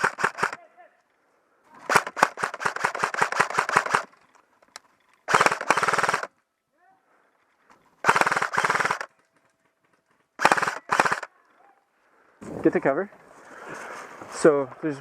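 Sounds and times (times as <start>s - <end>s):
airsoft rifle full-auto bursts: 0.0s - 0.6s, 1.8s - 4.1s, 5.3s - 6.3s, 8.0s - 9.1s, 10.4s - 11.3s.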